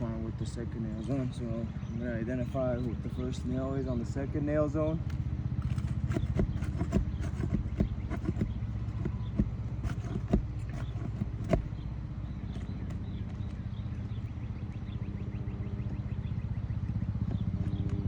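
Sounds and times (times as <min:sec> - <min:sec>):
steady low hum: 0:00.0 - 0:18.0
hand tool clicking and tapping: 0:05.1 - 0:11.7.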